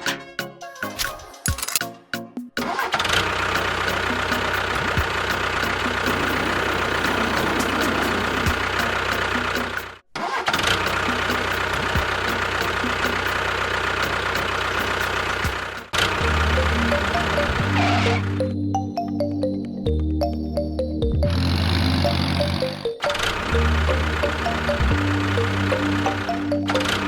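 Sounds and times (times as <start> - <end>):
vehicle engine idling: 3.1 - 10.0, 10.6 - 18.2, 21.3 - 27.0.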